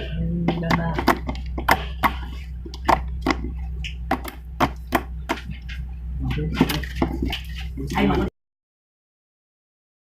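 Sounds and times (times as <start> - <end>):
steady low hum: 0.0 - 8.3.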